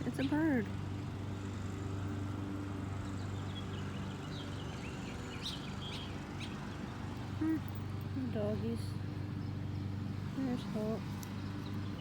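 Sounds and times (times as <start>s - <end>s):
small bird chirping: 3.1s - 7.8s.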